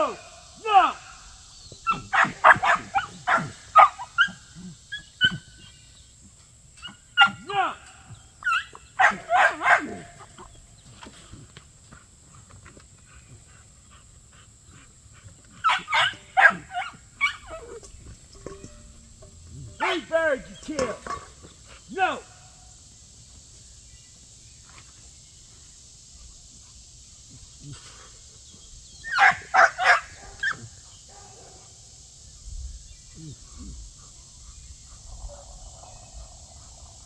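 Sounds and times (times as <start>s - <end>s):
dog barking and yipping: 1.8s - 5.9s, 6.8s - 7.8s, 8.4s - 11.1s, 15.5s - 17.8s, 29.0s - 31.8s.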